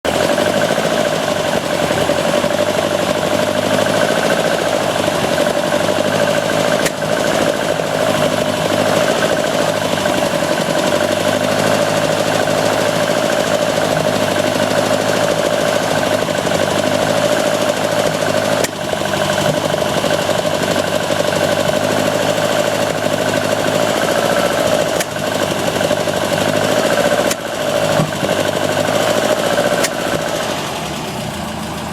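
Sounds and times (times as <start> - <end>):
engine running near idle: 0.0 - 31.9
engine pops and coughs: 3.4 - 11.4, 23.8 - 31.0.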